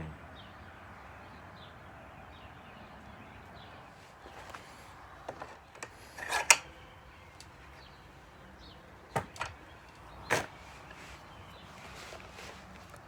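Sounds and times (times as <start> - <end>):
hard objects knocking and clicking: 9.1 - 11.0.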